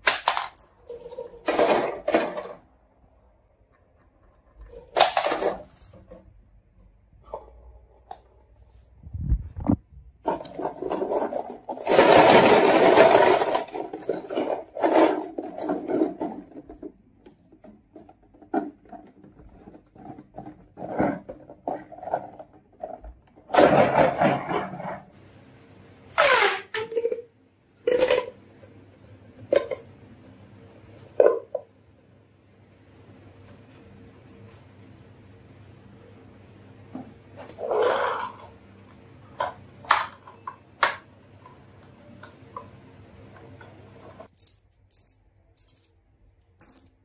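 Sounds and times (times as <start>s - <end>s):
marbles rolling on wooden track: 10.3s - 16.9s, 37.5s - 38.5s.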